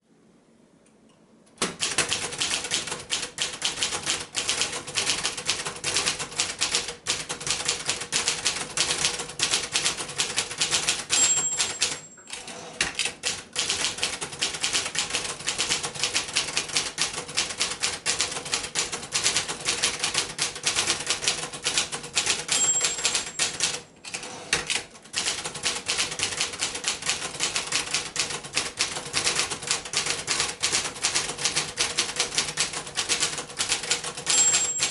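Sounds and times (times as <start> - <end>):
manual typewriter typing: 1.6 - 34.9
typewriter margin bell ringing: 10.8 - 12.8, 22.4 - 24.4, 34.0 - 34.9.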